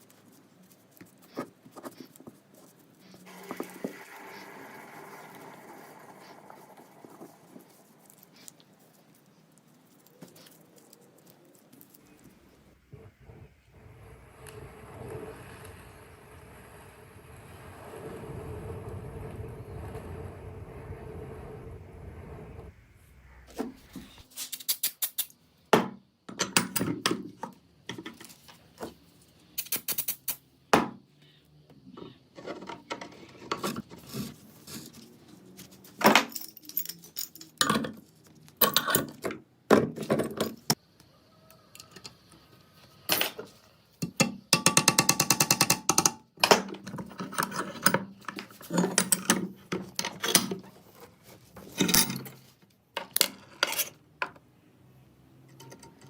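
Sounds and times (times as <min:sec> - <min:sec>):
metal parts and tools clinking: 0:35.8 - 0:39.3, 0:51.6 - 0:54.0.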